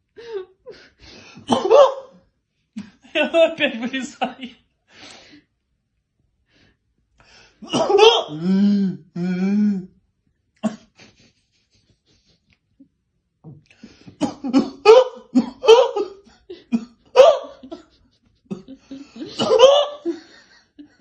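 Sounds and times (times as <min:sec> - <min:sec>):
child coughing and hiccuping: 0:01.5 - 0:02.1, 0:07.6 - 0:08.4, 0:14.2 - 0:17.7, 0:19.2 - 0:20.1.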